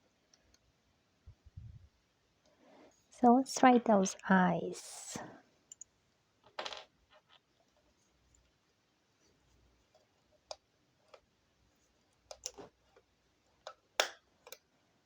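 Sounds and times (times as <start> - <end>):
plastic clicks and taps: 13.6 - 14.6.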